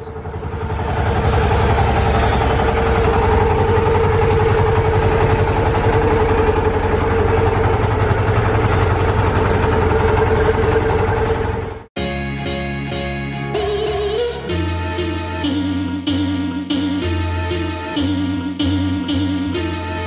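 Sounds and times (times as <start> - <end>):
boat engine running: 0.0 - 11.9.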